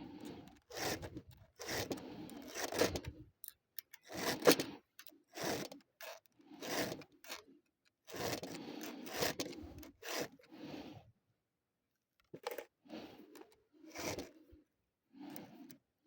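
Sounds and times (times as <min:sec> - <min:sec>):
scraping and rubbing strokes: 0:00.0 - 0:03.2.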